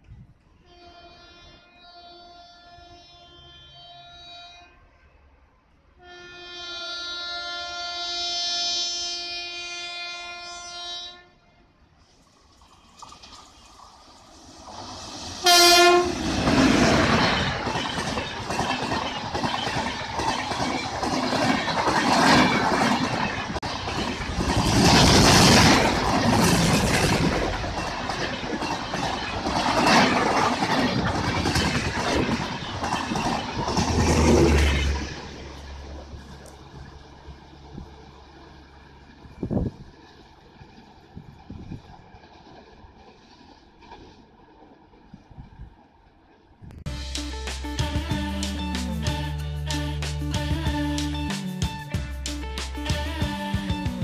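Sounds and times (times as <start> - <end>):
express train passing at speed: 0.0 - 54.0
train approaching rumble: 0.0 - 54.0
locomotive air horn blast: 0.6 - 5.3, 6.0 - 12.2, 15.4 - 16.7.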